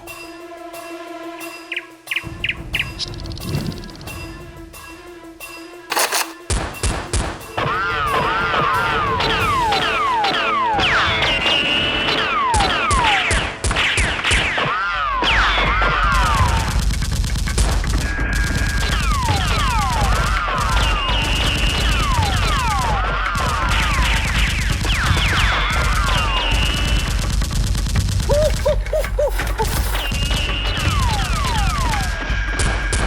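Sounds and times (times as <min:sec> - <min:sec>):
automatic gunfire: 0:05.9 - 0:06.4.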